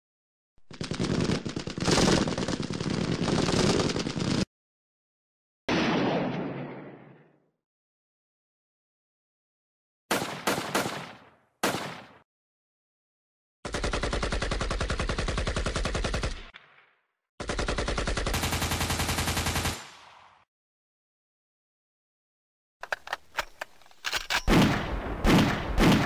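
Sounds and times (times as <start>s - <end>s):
automatic machine-gun fire: 0.7s - 4.5s, 10.1s - 12.2s, 13.7s - 16.6s, 17.4s - 20.5s, 24.5s - 26.0s
gunshots: 0.7s - 4.5s, 5.7s - 7.4s, 10.1s - 12.2s, 13.7s - 20.5s, 24.3s - 26.0s.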